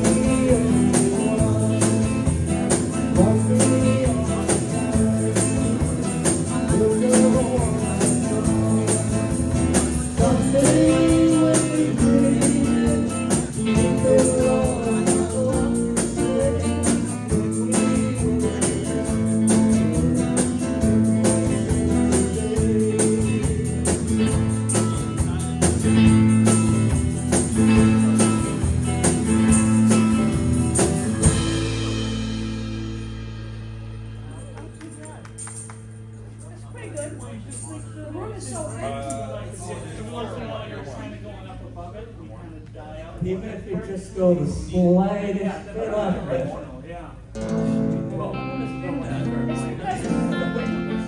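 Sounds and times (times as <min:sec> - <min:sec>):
person singing: 0:00.0 - 0:24.6
live band playing: 0:00.0 - 0:38.8, 0:47.4 - 0:51.0
tambourine beat: 0:00.0 - 0:39.2.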